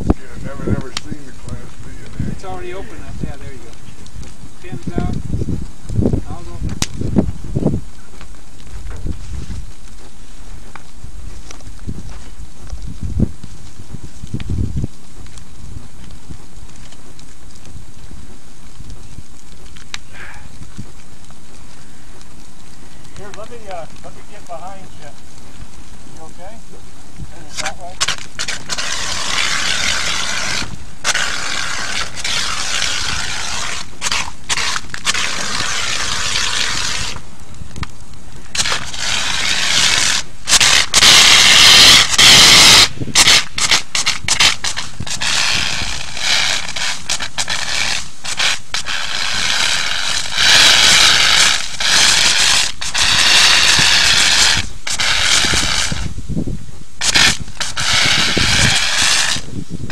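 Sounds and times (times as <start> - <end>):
hissing foam spray bursts: 28.0 - 37.3, 38.5 - 56.1, 57.0 - 59.5.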